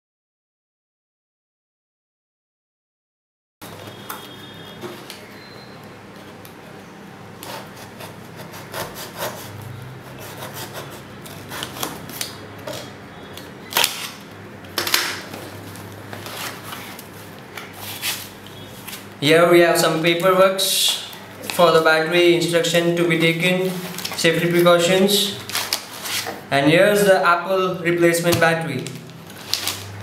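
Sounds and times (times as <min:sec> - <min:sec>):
box packaging rustling and scraping: 0:15.3 - 0:19.1, 0:23.1 - 0:26.5, 0:28.2 - 0:30.0.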